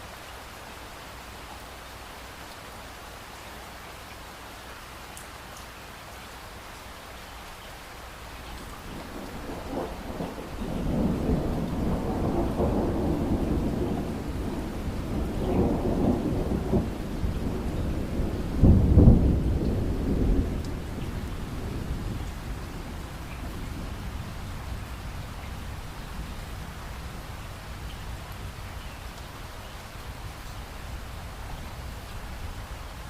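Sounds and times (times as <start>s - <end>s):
steady rain: 0.0s - 33.0s
thunder rolling: 8.8s - 26.9s.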